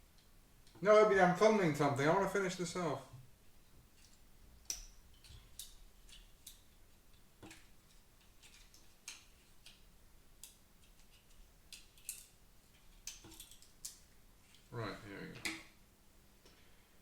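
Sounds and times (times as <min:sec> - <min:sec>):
small tools ticking and clicking: 0:10.4 - 0:14.0.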